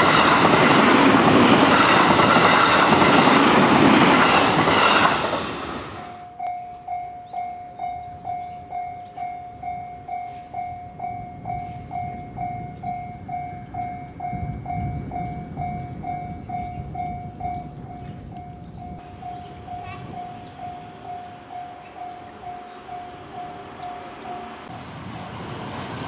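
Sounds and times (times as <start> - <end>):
level crossing bell dinging: 6.0 - 14.2, 18.9 - 24.7.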